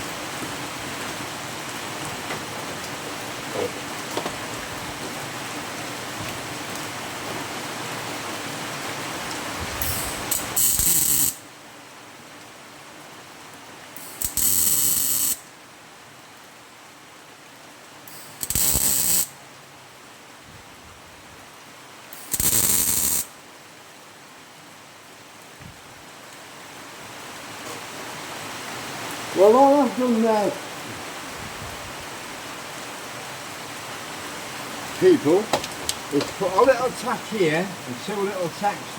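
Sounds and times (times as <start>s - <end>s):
rain on a roof: 0.0s - 38.9s
welder crackling and sizzling: 9.8s - 11.4s, 14.0s - 15.4s, 18.1s - 19.3s, 22.1s - 23.3s.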